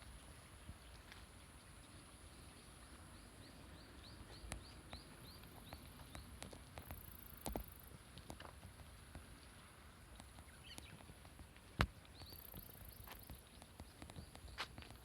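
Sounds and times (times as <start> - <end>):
faint rural background: 0.0 - 15.0
bird chirping: 10.1 - 11.0.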